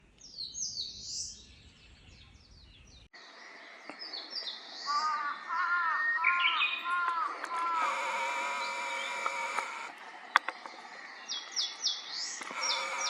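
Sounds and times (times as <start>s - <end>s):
warbler singing: 0.2s - 13.0s
bird's lower arched calls: 4.9s - 9.9s, 12.3s - 13.0s.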